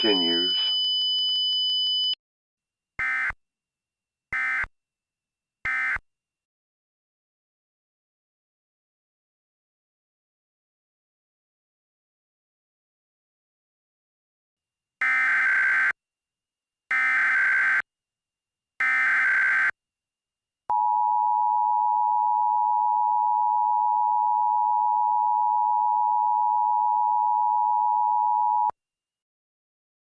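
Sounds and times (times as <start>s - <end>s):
two-tone attention signal: 0.0s - 0.8s.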